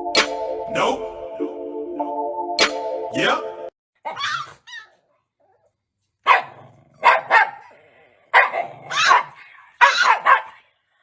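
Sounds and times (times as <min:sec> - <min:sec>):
dog barking: 0:04.0 - 0:05.0, 0:06.2 - 0:10.6.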